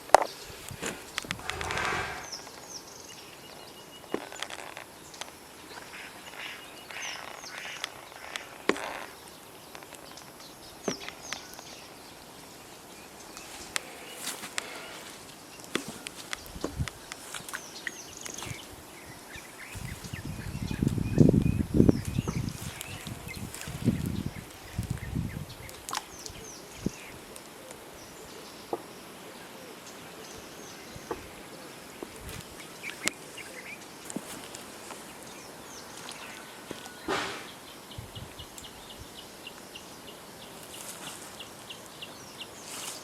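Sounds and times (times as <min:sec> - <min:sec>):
rustling: 0:00.1 - 0:02.8, 0:32.0 - 0:37.7.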